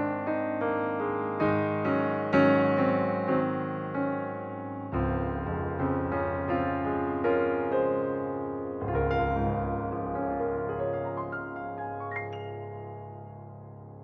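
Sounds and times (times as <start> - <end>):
piano notes: 0.0 - 14.0
bass line: 8.9 - 10.9.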